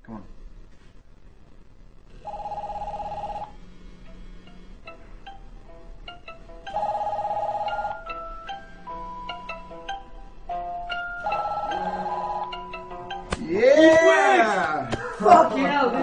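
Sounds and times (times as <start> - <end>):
warbling electronic phone ring: 2.2 - 3.6, 6.7 - 9.7, 10.9 - 13.2
ringtone tune: 6.1 - 13.3.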